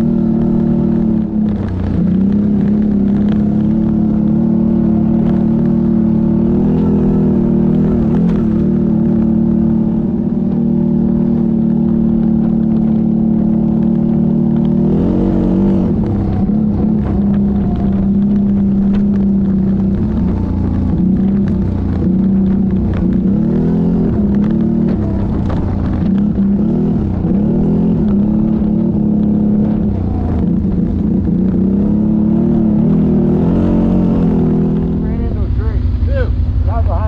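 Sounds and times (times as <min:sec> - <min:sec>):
atv engine revving: 0:00.0 - 0:37.0.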